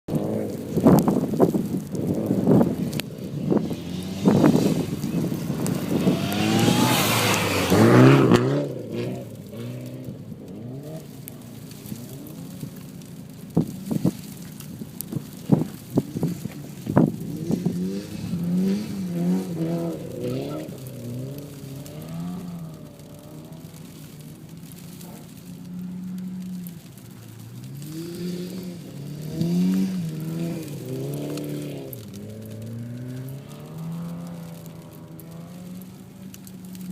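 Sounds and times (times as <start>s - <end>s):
car engine revving: 0.1s - 36.9s
car engine revving hard: 3.9s - 10.0s.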